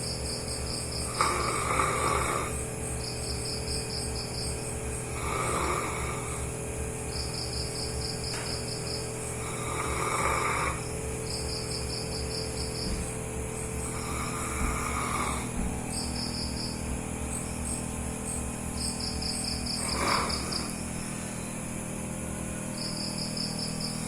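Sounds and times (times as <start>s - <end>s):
dog snoring loudly: 0.0s - 12.8s, 13.6s - 16.6s, 19.0s - 21.0s
insects chirping in trills: 0.0s - 24.0s.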